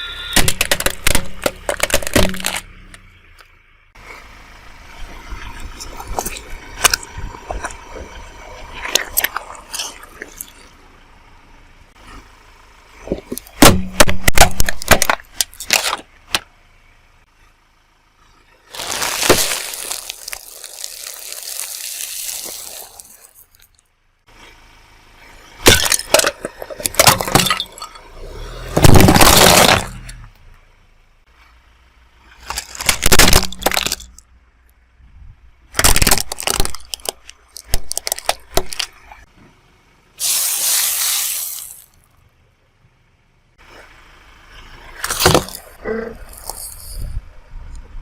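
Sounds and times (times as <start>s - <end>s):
objects crunching under car tyre: 0.2s - 3.6s, 5.0s - 11.3s, 13.0s - 16.5s, 18.6s - 23.9s, 25.5s - 30.6s, 32.2s - 34.3s, 35.7s - 39.3s, 40.2s - 42.1s, 44.7s - 47.2s.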